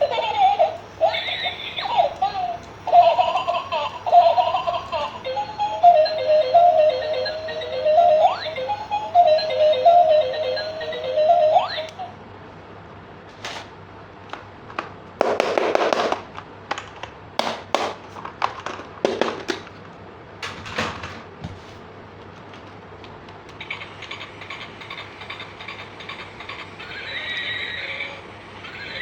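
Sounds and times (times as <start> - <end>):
plastic parts clicking and knocking: 14.7 - 21.1.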